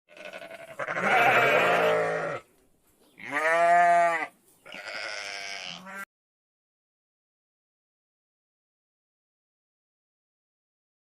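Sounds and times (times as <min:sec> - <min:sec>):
sheep or goat bleating: 0:00.1 - 0:02.5, 0:03.2 - 0:06.1.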